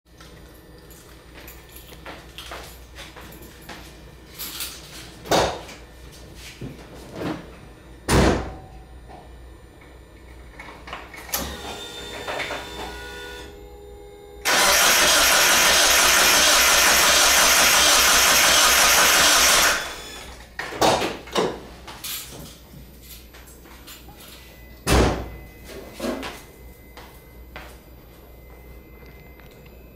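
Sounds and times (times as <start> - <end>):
starter cranking engine: 14.5 - 20.0.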